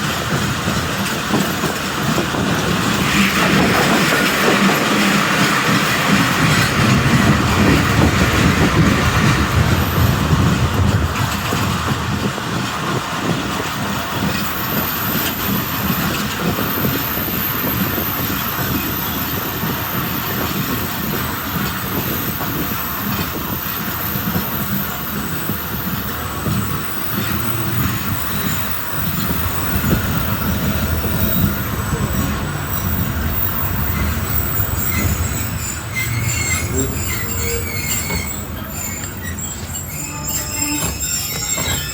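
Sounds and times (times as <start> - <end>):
train wheels clattering on rails: 0.0 - 41.9.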